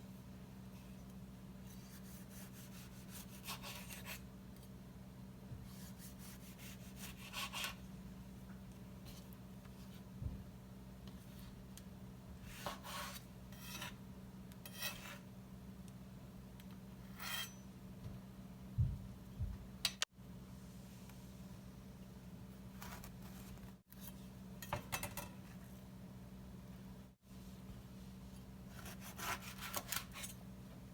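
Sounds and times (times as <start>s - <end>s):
scraping and rubbing food preparation: 0.6s - 4.3s, 12.4s - 14.0s, 22.6s - 24.4s.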